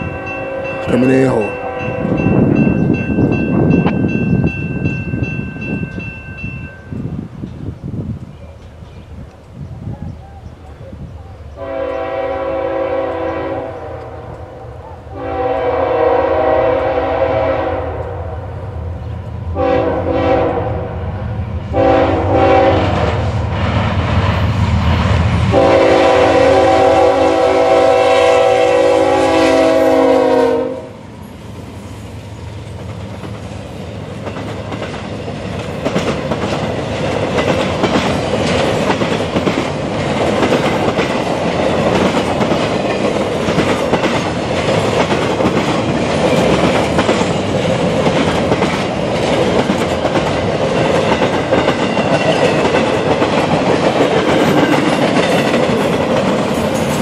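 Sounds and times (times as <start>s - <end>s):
locomotive air horn blasts: 0.0s - 0.9s, 1.5s - 2.2s, 11.6s - 14.3s, 15.1s - 18.4s, 19.6s - 20.9s, 21.7s - 23.1s, 25.5s - 31.0s
heavy locomotive rumble: 0.0s - 57.0s
train wheels clattering: 32.6s - 57.0s.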